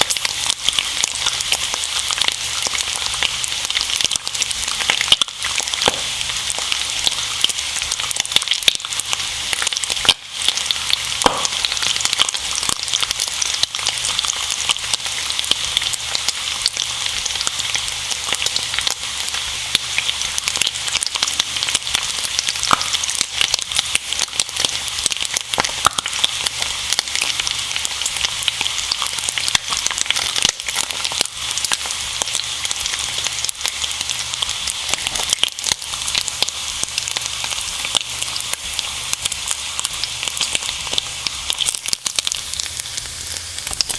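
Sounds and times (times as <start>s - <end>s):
bacon and eggs sizzling: 0.0s - 43.9s.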